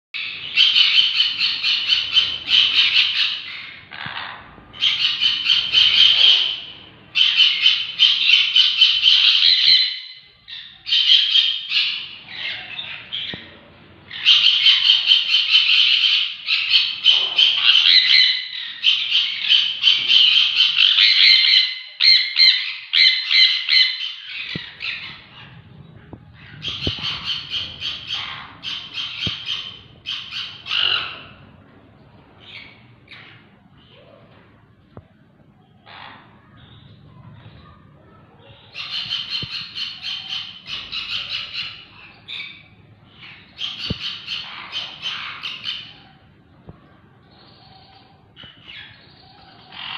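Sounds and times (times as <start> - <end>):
parrot screeching: 0.2 - 13.2, 14.1 - 25.7, 26.5 - 31.5, 49.4 - 49.9.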